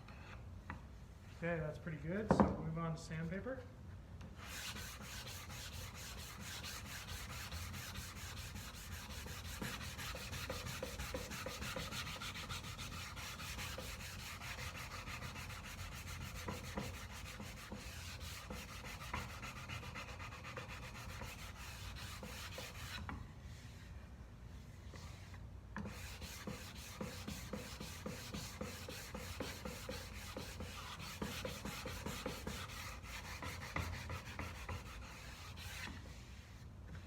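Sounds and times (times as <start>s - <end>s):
sandpaper rubbing on wood: 4.4s - 23.0s, 25.8s - 36.4s.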